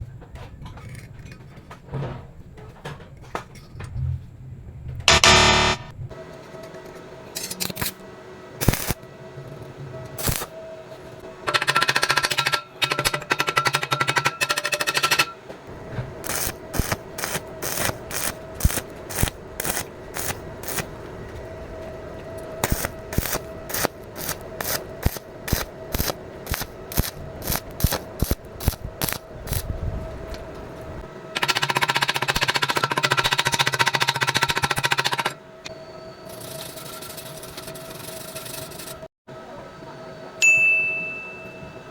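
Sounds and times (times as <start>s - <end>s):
music with held tones and percussive hits: 5.1s - 5.9s.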